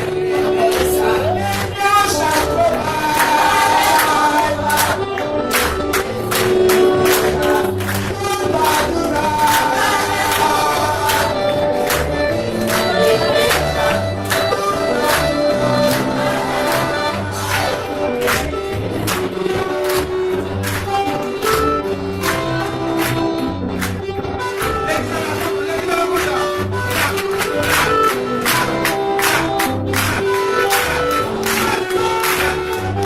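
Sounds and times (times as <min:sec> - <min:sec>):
bass line: 0:00.0 - 0:33.0
percussion beat: 0:00.0 - 0:33.0
choir singing a gospel hymn: 0:01.0 - 0:05.0, 0:07.2 - 0:13.1, 0:14.8 - 0:17.8.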